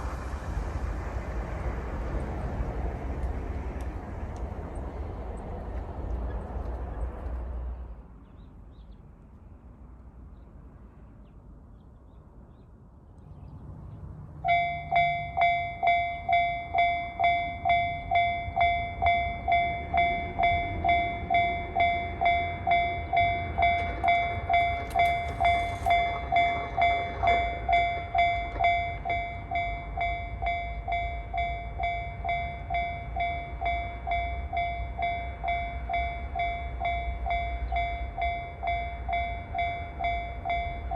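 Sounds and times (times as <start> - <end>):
level crossing alarm dinging: 14.5 - 40.9.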